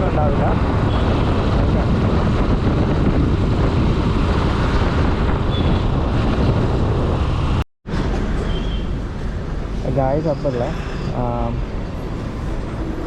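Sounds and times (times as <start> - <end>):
wind buffeting microphone: 0.0 - 9.8
vehicle road and engine noise: 0.0 - 13.0.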